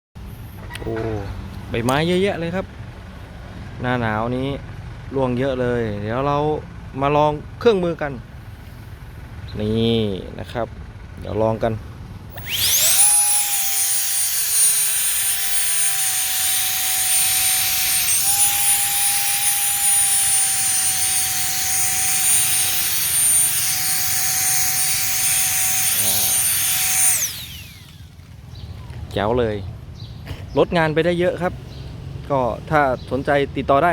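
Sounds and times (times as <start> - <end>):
leaf blower whining and rushing: 12.3 - 29.0.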